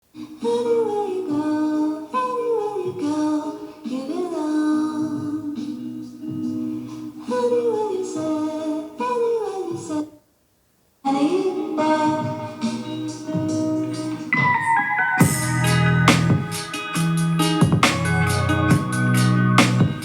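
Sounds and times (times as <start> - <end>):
woman singing song through speaker: 0.2 - 10.2, 11.0 - 17.0.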